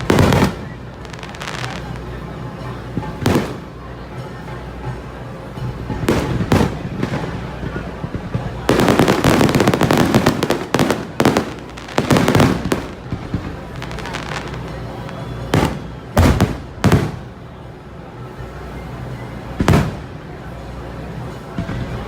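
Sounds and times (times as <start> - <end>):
loud firework bangs: 0.0 - 2.0, 3.0 - 3.8, 5.9 - 17.4, 19.6 - 20.2
fireworks crackling: 0.0 - 22.0.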